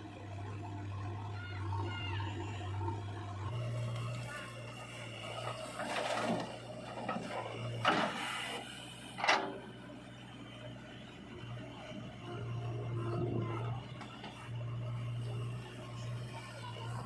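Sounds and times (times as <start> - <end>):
machine clunks and scrapes: 5.2 - 9.7.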